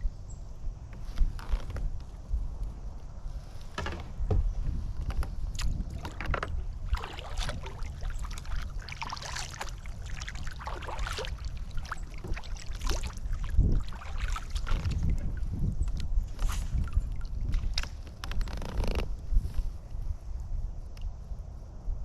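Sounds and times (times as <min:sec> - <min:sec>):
wind rumble on microphone: 0:00.0 - 0:22.0
water splashing around kayak: 0:03.5 - 0:19.6.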